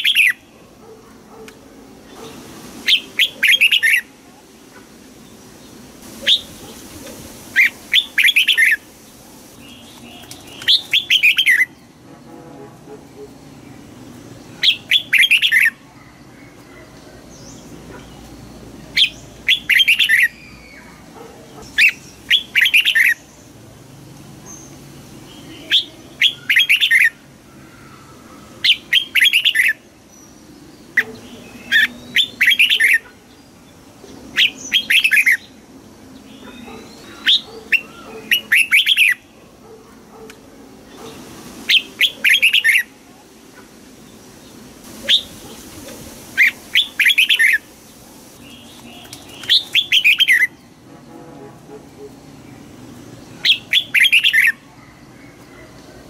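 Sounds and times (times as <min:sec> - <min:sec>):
bulbul singing warbling phrases: 0:02.9 - 0:04.2.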